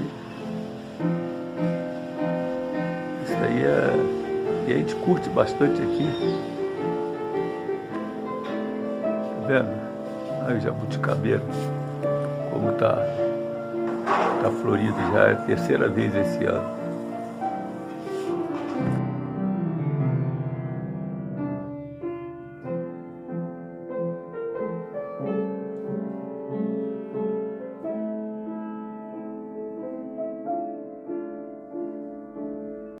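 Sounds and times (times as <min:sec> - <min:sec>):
gentle piano melody: 0:00.0 - 0:33.0.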